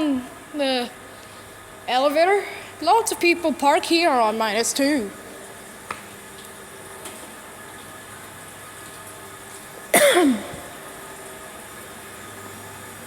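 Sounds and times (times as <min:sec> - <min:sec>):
steady background hum: 0:00.0 - 0:13.0
person coughing: 0:10.0 - 0:10.7.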